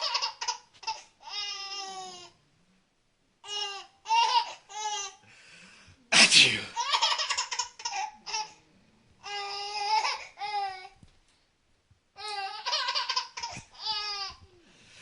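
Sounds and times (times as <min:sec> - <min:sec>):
baby laughing: 0:00.0 - 0:02.1, 0:06.8 - 0:08.6, 0:12.3 - 0:14.3.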